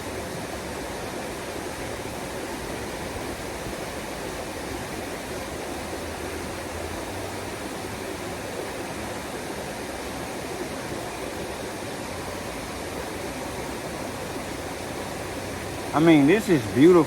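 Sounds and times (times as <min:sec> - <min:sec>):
water flowing over rocks: 0:00.0 - 0:17.0.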